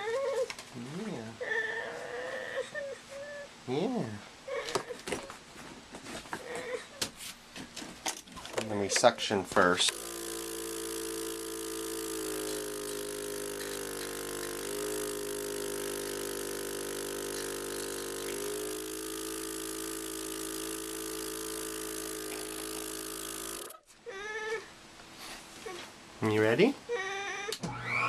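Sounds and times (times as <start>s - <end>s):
suction machine motor humming: 9.6s - 23.8s.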